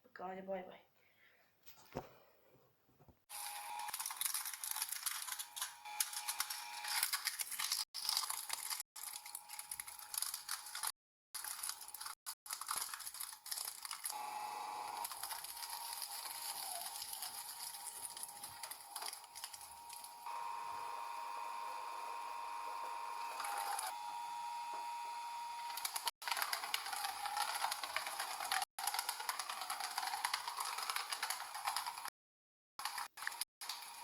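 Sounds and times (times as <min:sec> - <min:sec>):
machine crushing objects: 0:03.3 - 0:32.1.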